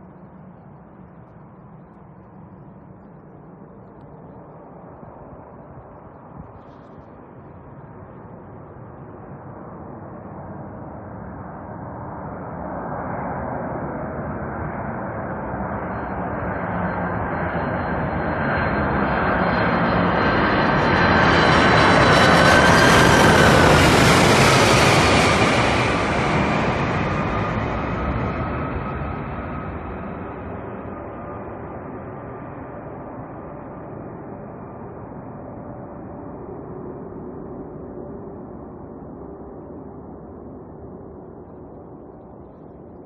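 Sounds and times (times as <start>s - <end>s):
jet airliner passing with fan whine: 0.0s - 43.0s.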